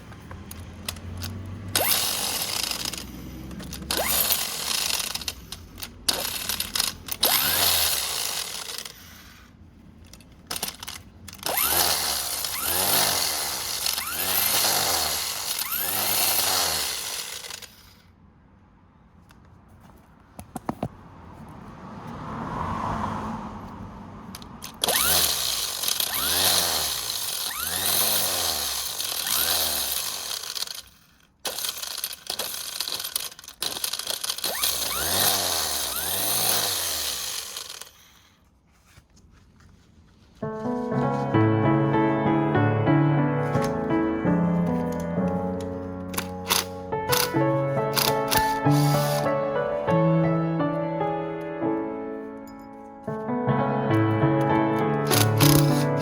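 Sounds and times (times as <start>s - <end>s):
handheld power tool running: 0.0s - 9.5s, 10.1s - 18.1s, 24.4s - 38.4s, 44.6s - 49.5s, 55.0s - 56.0s.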